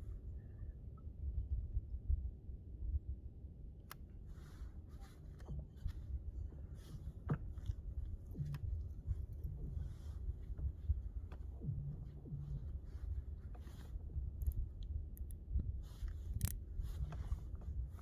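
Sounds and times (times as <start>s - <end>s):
low rumble: 4.4s - 18.0s.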